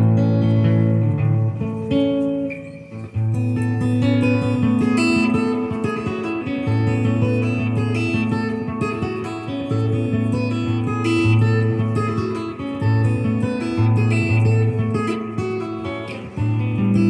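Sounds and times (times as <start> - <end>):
electric guitar with slapback echo: 0.0 - 17.0.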